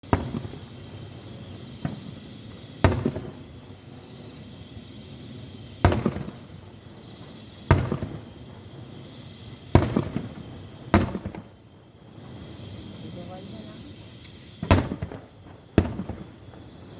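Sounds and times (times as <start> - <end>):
fireworks banging: 0.0 - 16.9.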